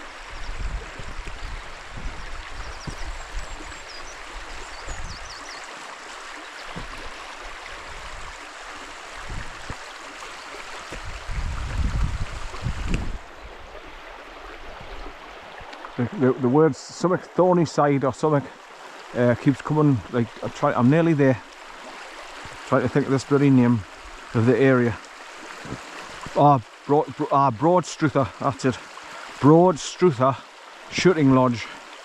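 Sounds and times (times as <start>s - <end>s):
stream rushing over stones: 0.0s - 32.0s.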